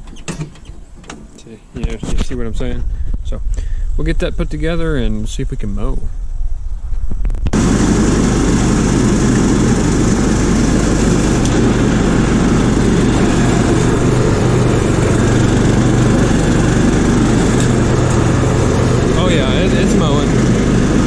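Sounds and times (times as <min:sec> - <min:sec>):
lawn tractor engine running: 0:07.6 - 0:21.0
mower deck cutting grass: 0:07.6 - 0:21.0.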